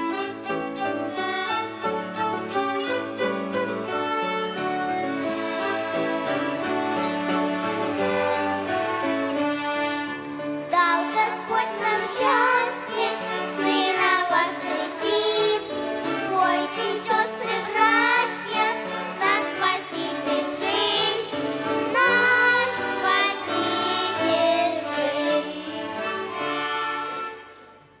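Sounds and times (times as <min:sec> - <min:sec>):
violin ensemble: 0:00.0 - 0:28.0
children singing: 0:10.7 - 0:27.6.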